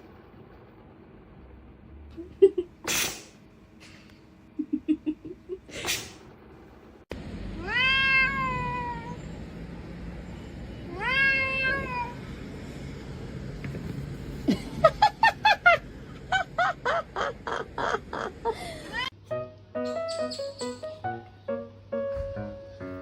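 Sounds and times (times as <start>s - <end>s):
cat meowing: 7.6s - 9.2s, 10.9s - 12.3s.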